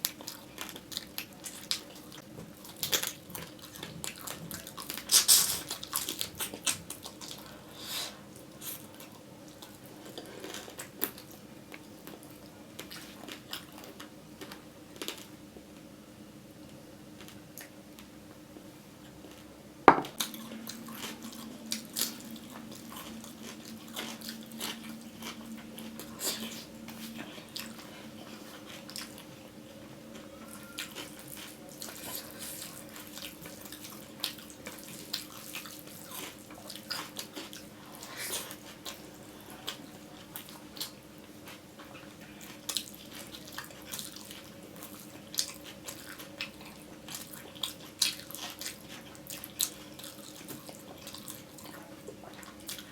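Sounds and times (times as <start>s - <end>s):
wet chewing and smacking: 0.0s - 7.6s, 20.1s - 29.5s, 30.2s - 52.9s
faint steady hum: 0.0s - 52.9s
dish knock: 19.9s - 20.2s.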